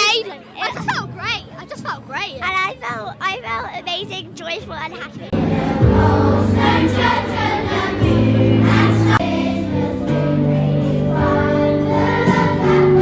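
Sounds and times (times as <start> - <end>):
choir singing held chords: 5.3 - 13.0.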